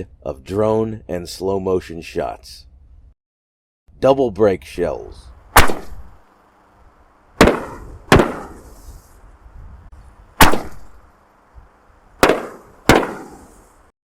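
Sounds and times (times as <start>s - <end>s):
firework shells bursting: 5.5s - 6.2s, 7.4s - 9.2s, 10.4s - 11.2s, 12.2s - 13.9s.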